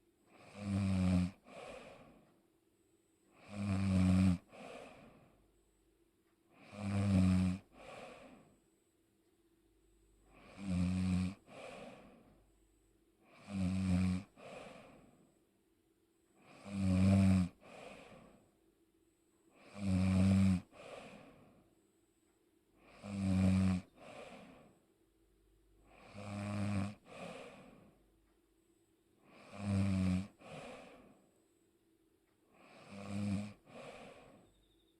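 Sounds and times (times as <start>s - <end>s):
person snoring: 0.3s - 2.2s, 3.3s - 5.4s, 6.5s - 8.5s, 10.3s - 12.4s, 13.2s - 15.1s, 16.4s - 18.4s, 19.6s - 21.5s, 22.8s - 24.8s, 25.8s - 28.0s, 29.2s - 31.2s, 32.5s - 34.5s.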